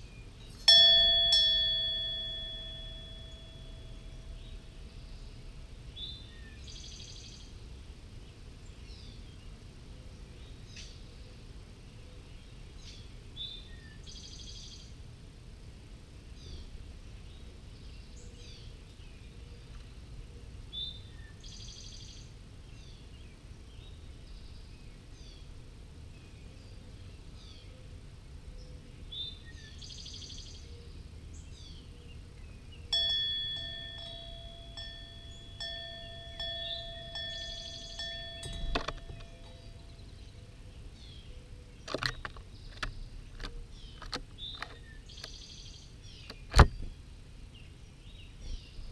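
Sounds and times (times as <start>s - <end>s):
wren singing: 0.0s - 7.6s, 29.0s - 48.9s
bell-like chime ringing: 0.6s - 4.7s, 32.9s - 40.2s.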